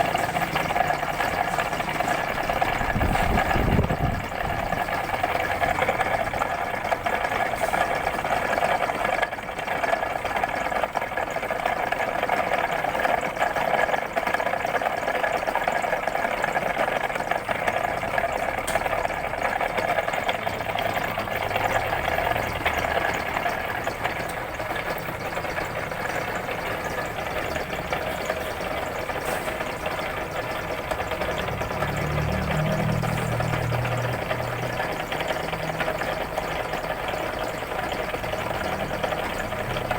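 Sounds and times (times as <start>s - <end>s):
machine tool whining: 0.0s - 9.0s.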